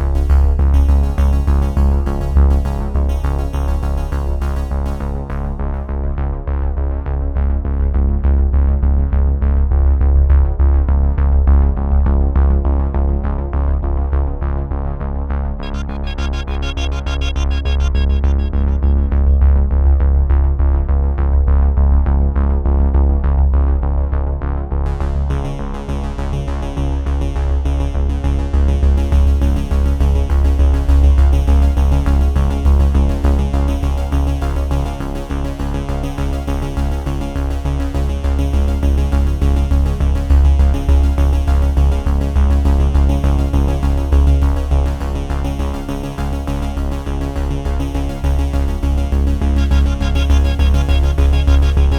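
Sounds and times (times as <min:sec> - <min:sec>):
electronic synthesizer music: 0:15.6 - 0:20.1, 0:48.7 - 0:51.9.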